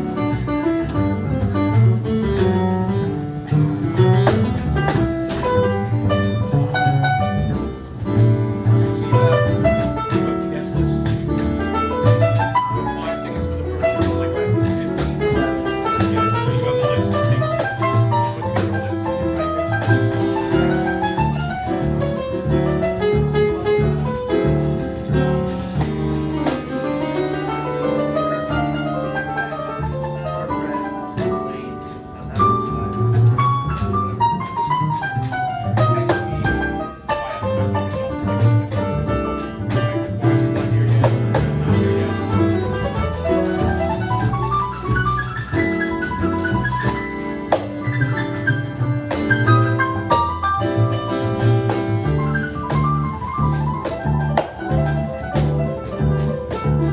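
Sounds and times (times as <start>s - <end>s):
bass notes: 0.0s - 56.9s.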